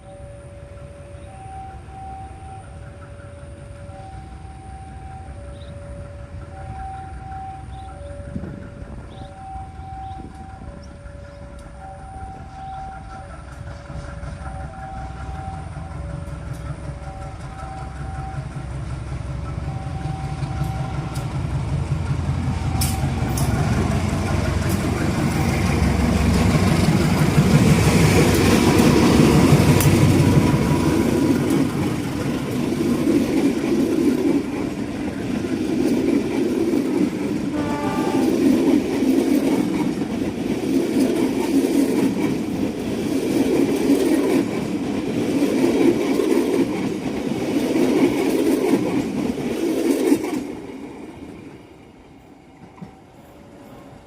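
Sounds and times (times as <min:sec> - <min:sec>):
two-tone level crossing alarm: 0:00.0 - 0:18.7, 0:19.6 - 0:21.3, 0:22.6 - 0:23.5
locomotive rumble: 0:00.0 - 0:54.0
train carriages clickety-clack: 0:00.0 - 0:54.0
short train horn: 0:37.4 - 0:39.0.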